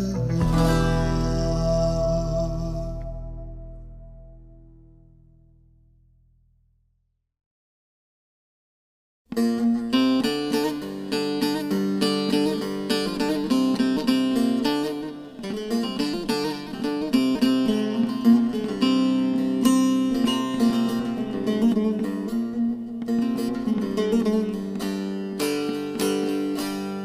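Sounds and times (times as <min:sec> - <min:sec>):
held low drone notes: 0:00.0 - 0:05.8
plucked string instrument melody: 0:00.0 - 0:05.9, 0:09.3 - 0:27.0.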